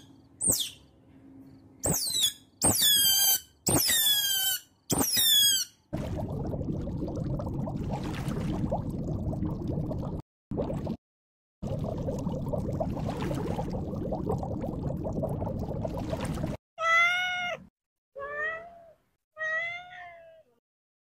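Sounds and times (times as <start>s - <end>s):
cat meowing: 16.8s - 20.6s.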